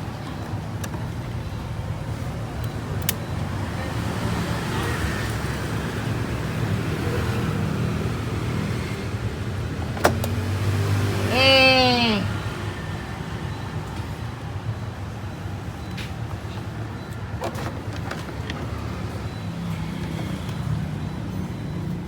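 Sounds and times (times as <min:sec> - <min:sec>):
sharp clicks: 0:02.6 - 0:03.4.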